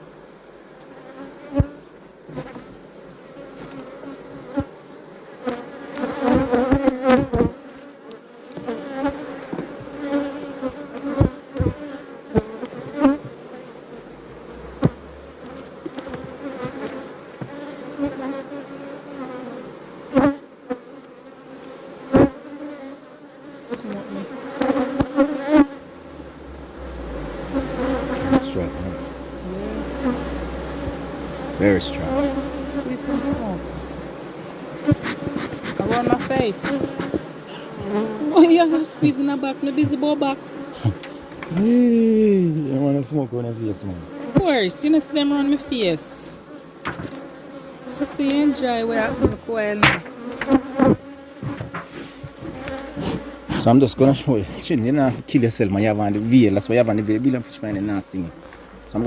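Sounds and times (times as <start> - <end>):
honey bees buzzing: 0.0 - 59.0
knocks and clicks of wooden hive: 6.0 - 7.5, 8.5 - 10.2, 11.0 - 13.4, 14.4 - 18.1, 34.8 - 38.0, 46.8 - 47.4, 49.0 - 53.3.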